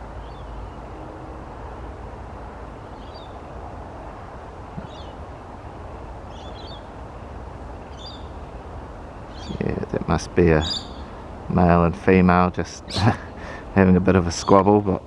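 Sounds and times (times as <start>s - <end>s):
steady background hiss: 0.0s - 15.0s
short high bird calls: 6.3s - 7.0s, 9.3s - 9.7s, 10.6s - 11.2s.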